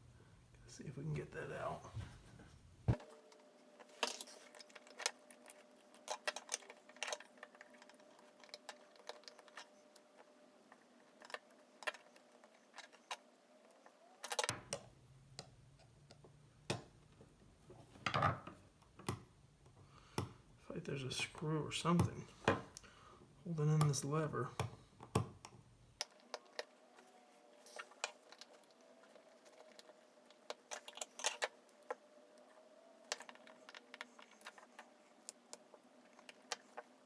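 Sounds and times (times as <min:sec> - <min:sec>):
small metal clicks and scrapes: 0:03.0 - 0:14.8, 0:23.7 - 0:37.0.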